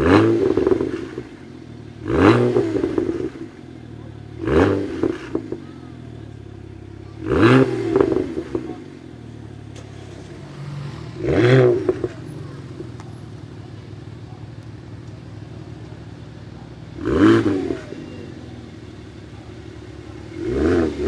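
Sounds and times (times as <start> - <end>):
car engine revving: 0.0 - 14.2, 14.8 - 21.0
exhaust crackles and pops: 11.2 - 16.2.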